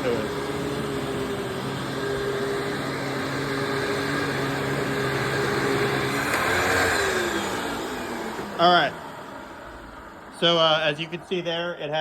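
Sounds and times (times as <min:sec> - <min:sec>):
vacuum cleaner motor whining: 0:00.0 - 0:12.0.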